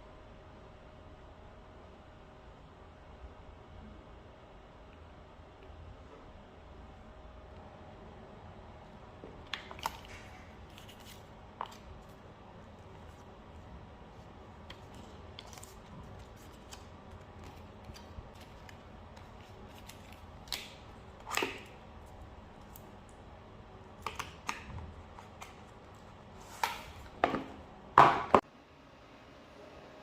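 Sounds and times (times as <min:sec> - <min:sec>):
packaging rustling: 0:09.7 - 0:20.6.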